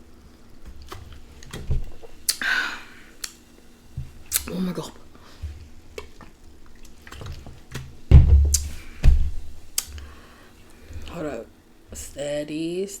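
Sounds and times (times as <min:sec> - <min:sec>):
person gulping soda: 0:00.8 - 0:03.4
liquid glugging in bottle: 0:04.0 - 0:11.3.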